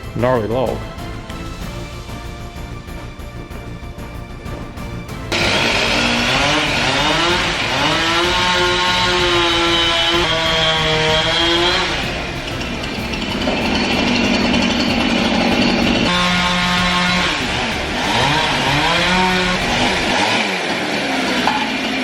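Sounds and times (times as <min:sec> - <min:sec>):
chainsaw cutting wood: 0:05.3 - 0:22.0.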